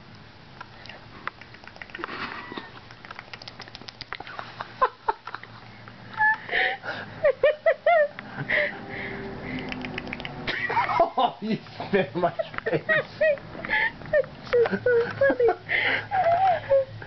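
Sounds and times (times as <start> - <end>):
mouth clicks and smacks: 0.6 - 5.6, 9.5 - 10.6
breathy puffs of air: 8.3 - 9.8.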